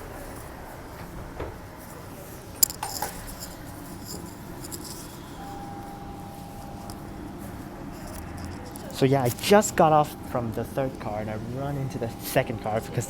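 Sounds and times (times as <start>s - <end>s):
train carriage background noise: 0.0s - 13.0s
steady high beep: 5.4s - 7.0s, 9.4s - 13.0s.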